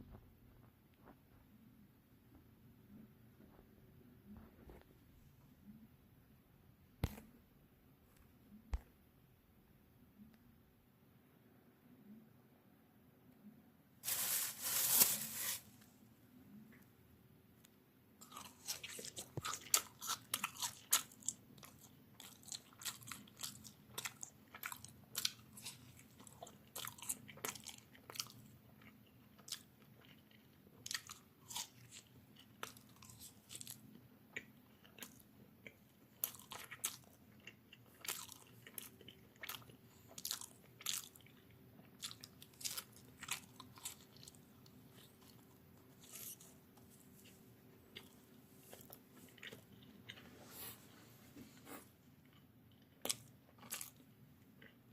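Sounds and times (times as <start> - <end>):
chewing marshmallow: 18.2 - 50.8, 51.7 - 54.9.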